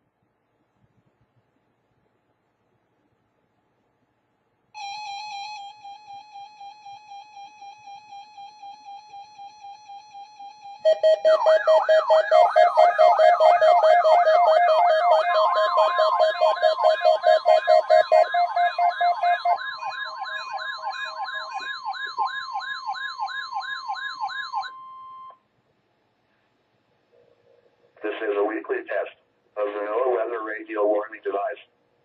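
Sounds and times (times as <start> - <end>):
steady warning alarm tone: 4.8 - 25.4
rapid electronic beeping: 10.8 - 24.8.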